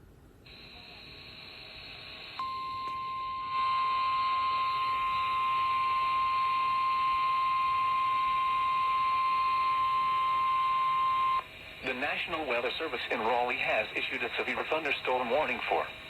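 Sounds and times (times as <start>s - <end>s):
steady alarm tone: 0.5s - 16.0s.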